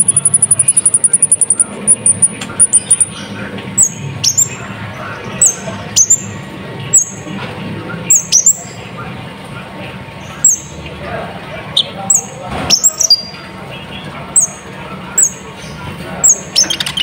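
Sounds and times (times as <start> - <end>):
bird sharp chirps: 0.0 - 4.6.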